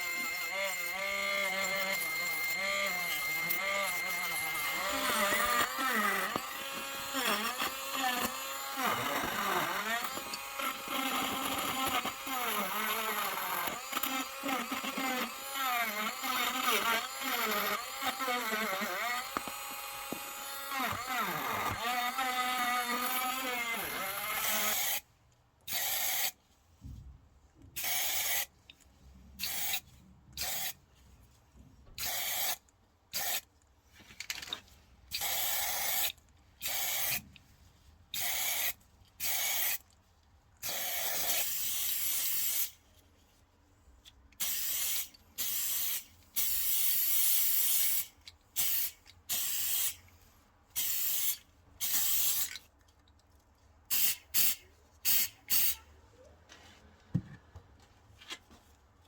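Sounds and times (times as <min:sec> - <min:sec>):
small electric motor whining: 0:00.0 - 0:25.0.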